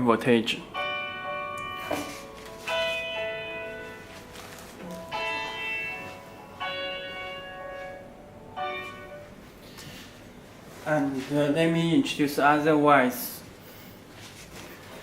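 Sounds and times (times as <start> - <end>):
bell-like chimes ringing chords: 0.7 - 9.4.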